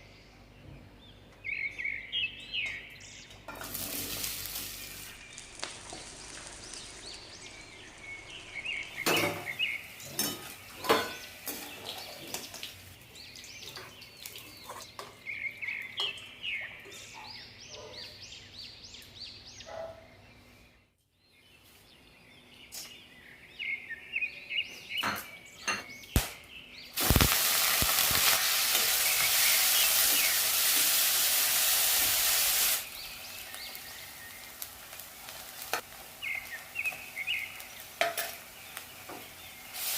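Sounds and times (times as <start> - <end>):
loud steady sizzle: 3.4 - 16.7, 26.1 - 39.9
food frying in a pan: 3.5 - 16.2, 27.0 - 39.9.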